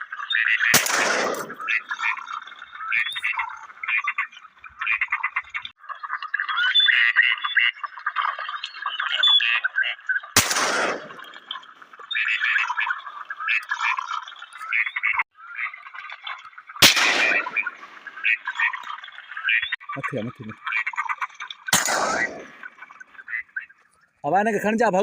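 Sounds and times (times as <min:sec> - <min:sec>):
chorus of chattering animal calls: 0:00.0 - 0:23.9
shotgun shot: 0:00.7 - 0:01.7, 0:10.4 - 0:11.4, 0:16.8 - 0:17.8, 0:21.7 - 0:22.6.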